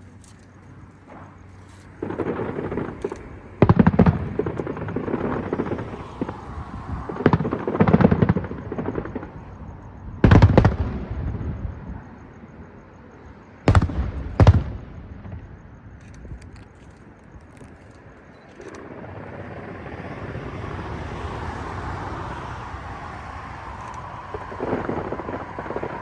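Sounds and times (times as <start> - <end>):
fireworks crackling bangs: 1.0 - 9.4, 10.2 - 11.6, 13.7 - 15.4, 23.4 - 26.0.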